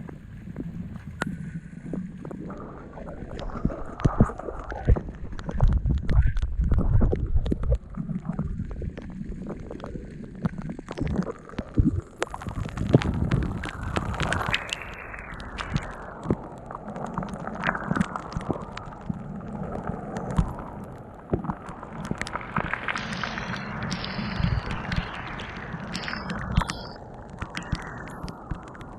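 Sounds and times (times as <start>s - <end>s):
low rumbling on microphone: 0.0s - 10.0s, 11.8s - 16.6s
rain splashing and pattering: 0.0s - 28.9s
rush of water: 0.0s - 28.9s
water drops tapping on camera: 21.3s - 28.9s.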